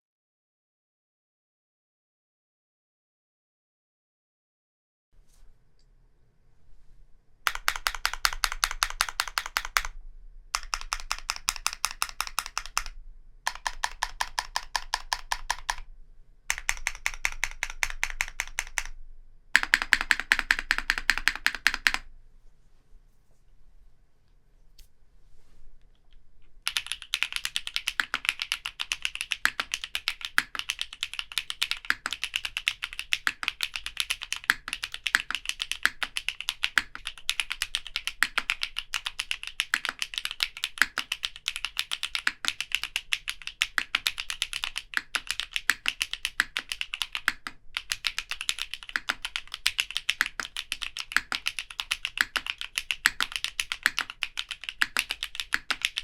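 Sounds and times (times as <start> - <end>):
mechanical keyboard typing: 7.5 - 10.0, 10.6 - 15.9, 16.5 - 19.0, 19.6 - 22.1, 26.6 - 56.0.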